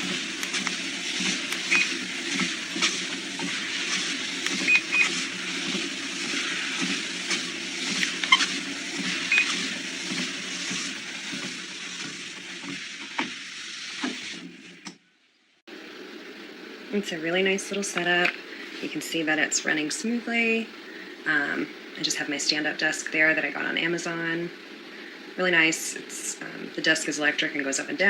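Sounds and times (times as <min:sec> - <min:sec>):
treadmill motor hum: 0:00.0 - 0:14.8.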